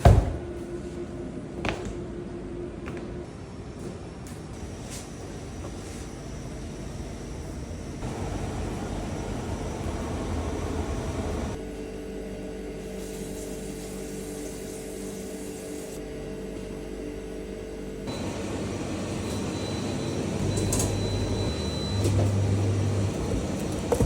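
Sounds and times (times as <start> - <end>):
bakery machinery hum: 0.0 - 24.0.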